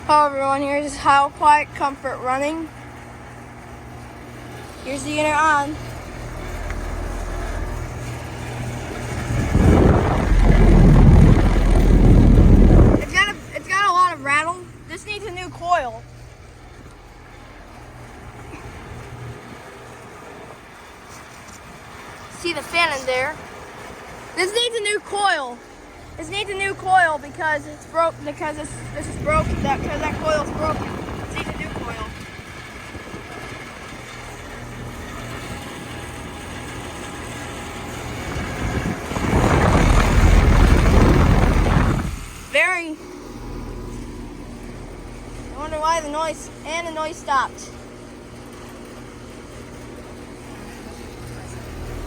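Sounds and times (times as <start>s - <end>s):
air conditioner unit humming: 0.0s - 52.0s
rough rushing rattle: 3.3s - 20.6s, 23.4s - 47.0s.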